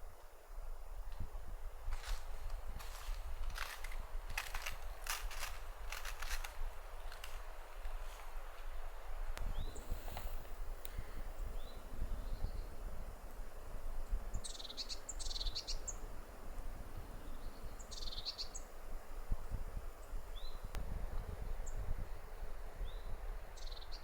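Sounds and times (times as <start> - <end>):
wind rumbling on microphone: 0.6 - 24.0
songbird chirping and trilling: 14.3 - 16.0, 17.3 - 18.7.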